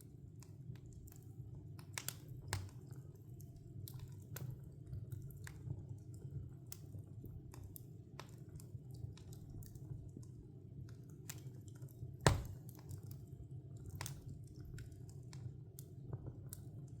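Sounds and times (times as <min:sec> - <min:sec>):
wood fire crackling: 0:00.0 - 0:17.0
burning log popping: 0:12.1 - 0:13.2.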